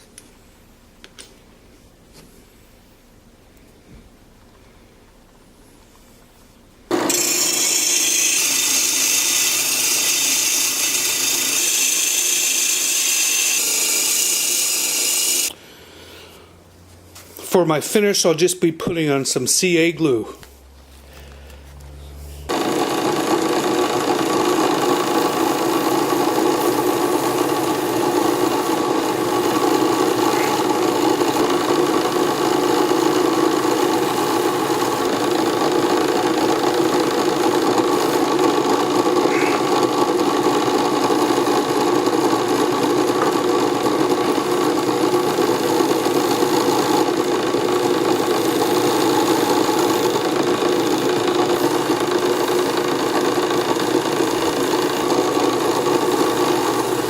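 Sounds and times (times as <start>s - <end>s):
wood lathe motor humming: 6.9s - 15.6s, 22.5s - 57.0s.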